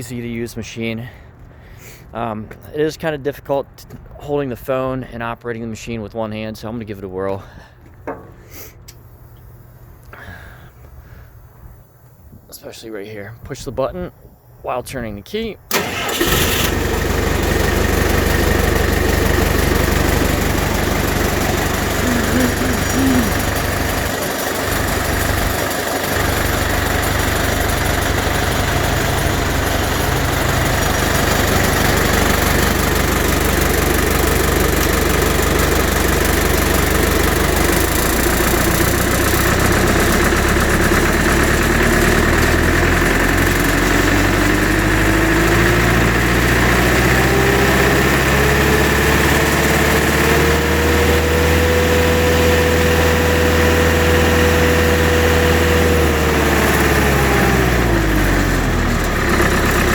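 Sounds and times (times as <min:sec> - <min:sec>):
diesel engine running: 0:15.7 - 0:59.9.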